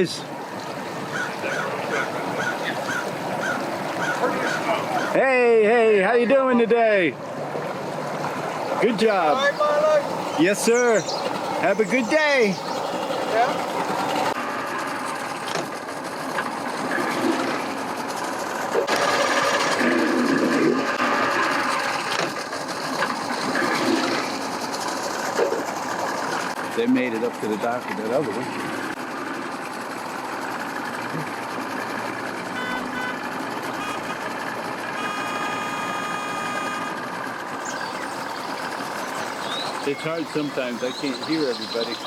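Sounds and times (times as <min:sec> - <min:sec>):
outboard motor running: 0:00.0 - 0:05.9, 0:07.2 - 0:42.0
engines idling: 0:00.0 - 0:42.0
short high beeps: 0:32.6 - 0:33.2, 0:33.8 - 0:34.2, 0:35.0 - 0:37.0
steady high tone: 0:35.0 - 0:37.0.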